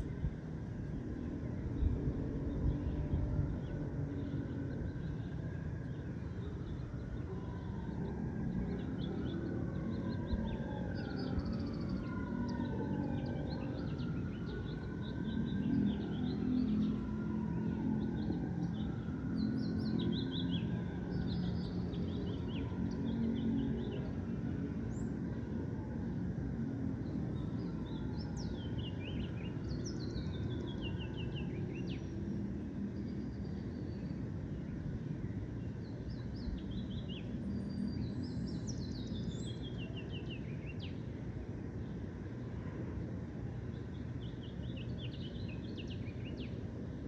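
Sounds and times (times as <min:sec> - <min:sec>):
distant city traffic rumble: 0:00.0 - 0:47.0.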